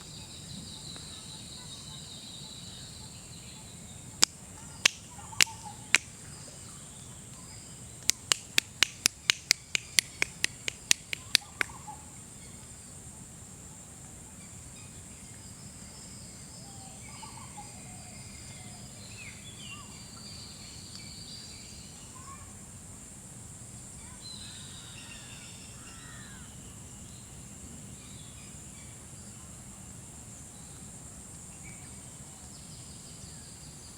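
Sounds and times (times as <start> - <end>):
birds calling: 0.0 - 6.8, 8.1 - 12.0
loud sharp clicks: 4.2 - 6.1, 8.0 - 11.7
high insect drone: 21.2 - 33.9.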